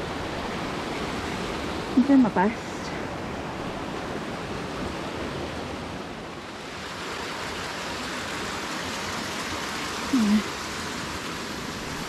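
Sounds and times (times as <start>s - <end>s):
waterfall rushing: 6.5s - 12.0s.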